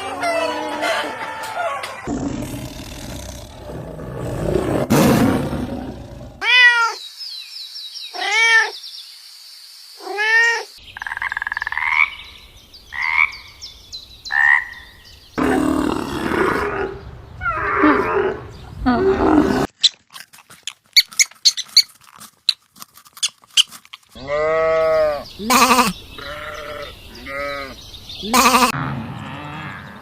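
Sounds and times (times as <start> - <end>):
rough animal call: 15.4 - 30.0.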